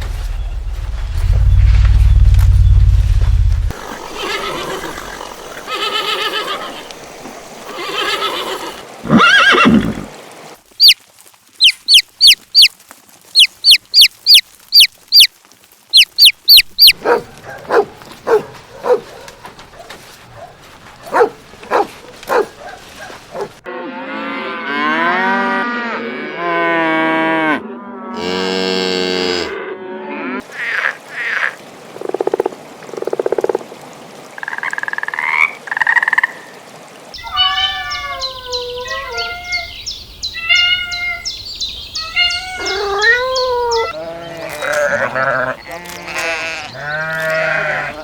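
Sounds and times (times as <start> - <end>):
horse neighing: 4.1 - 6.9, 7.7 - 10.1
cow mooing: 23.7 - 30.4.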